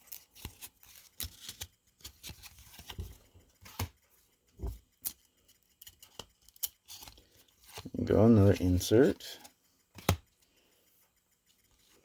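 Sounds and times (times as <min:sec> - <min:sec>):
cards clicking: 0:00.0 - 0:03.0, 0:08.9 - 0:10.2.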